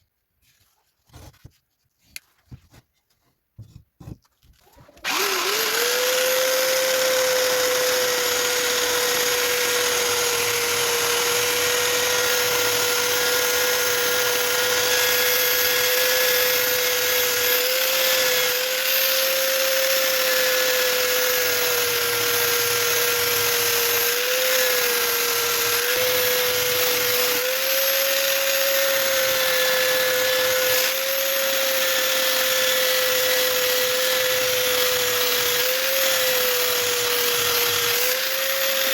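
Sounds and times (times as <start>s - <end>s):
belt sander motor whine: 5.0s - 38.9s.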